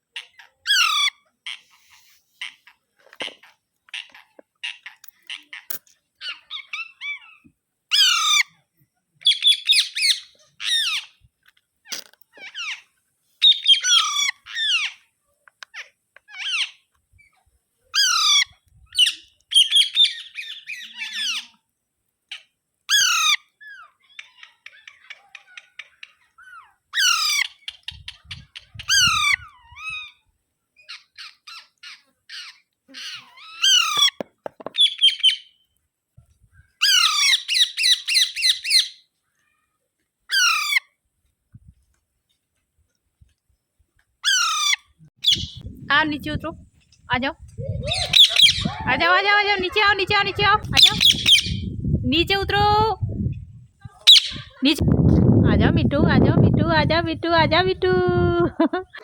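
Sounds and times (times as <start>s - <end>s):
parakeet chattering calls: 34.8s - 35.6s, 36.8s - 39.0s, 44.2s - 45.6s, 47.9s - 51.8s, 54.1s - 54.6s
parakeet squawking: 36.8s - 39.0s, 44.2s - 45.6s, 47.7s - 51.8s, 54.0s - 54.6s.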